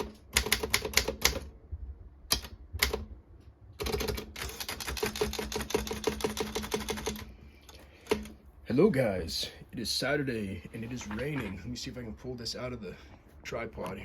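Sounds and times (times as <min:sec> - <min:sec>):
manual typewriter keystrokes: 0:00.0 - 0:01.5, 0:02.3 - 0:03.1, 0:03.8 - 0:07.3, 0:08.0 - 0:08.4.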